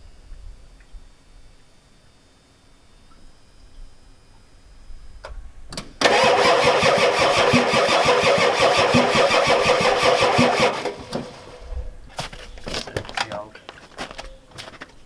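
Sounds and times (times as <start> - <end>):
starter cranking diesel engine: 6.0 - 11.7.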